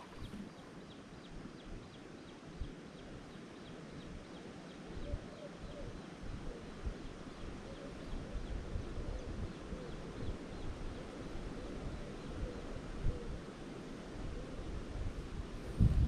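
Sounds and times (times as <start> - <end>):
water sounds: 0.0 - 0.8
wind buffeting microphone: 0.0 - 16.0.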